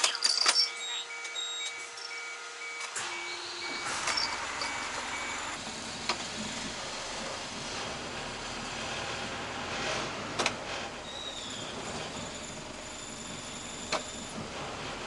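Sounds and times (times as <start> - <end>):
truck warning beeper: 0.4 - 5.6
vehicle rushing noise: 3.8 - 11.0.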